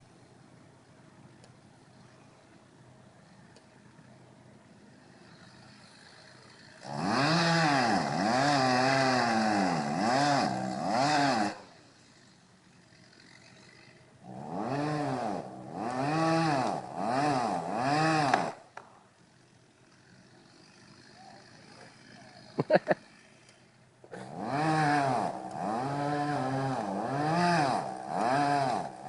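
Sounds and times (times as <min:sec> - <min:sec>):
chainsaw revving: 0:05.1 - 0:18.8, 0:19.8 - 0:29.0.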